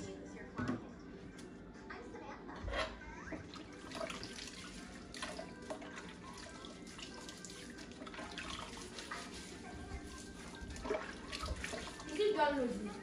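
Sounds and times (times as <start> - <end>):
water running into a sink: 3.7 - 12.8.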